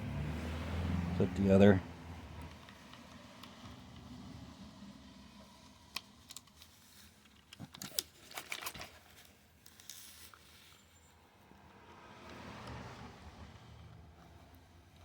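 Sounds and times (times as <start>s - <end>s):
plastic and metal parts clicking: 5.8s - 10.4s.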